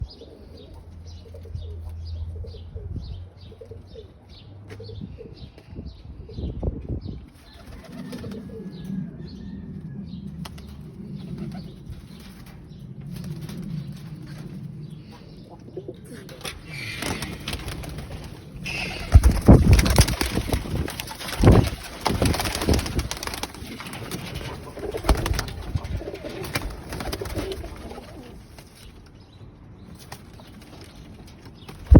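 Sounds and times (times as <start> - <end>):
low bird cooing: 0.0 - 6.6, 7.4 - 21.8, 22.6 - 28.6
wing flaps: 16.1 - 29.0.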